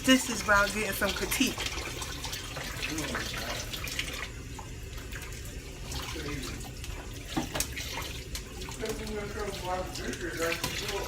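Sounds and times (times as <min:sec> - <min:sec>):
faucet running into sink: 0:00.0 - 0:11.0.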